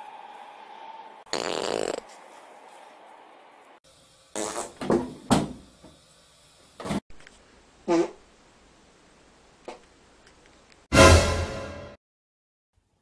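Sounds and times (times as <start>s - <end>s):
farts: 1.3s - 2.1s, 4.4s - 4.8s.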